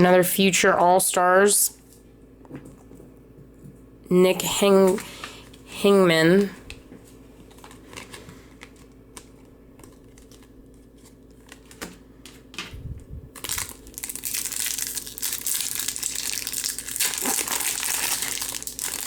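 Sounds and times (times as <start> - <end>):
card pack wrapper crinkling: 7.4 - 11.9, 13.3 - 19.0.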